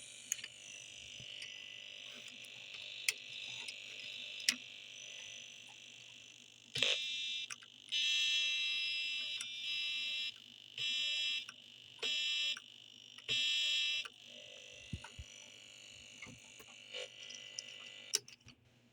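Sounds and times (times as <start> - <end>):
electronic buzzer alarm tone: 6.8 - 15.3.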